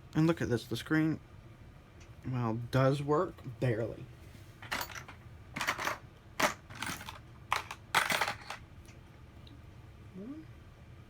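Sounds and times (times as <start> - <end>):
small tools clattering on work surface: 4.6 - 8.6.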